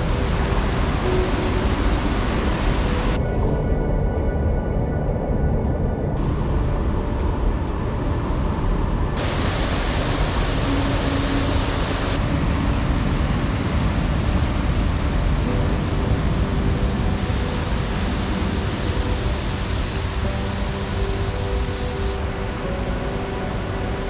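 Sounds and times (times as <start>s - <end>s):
waterfall rushing: 0.0s - 3.2s, 9.2s - 24.0s.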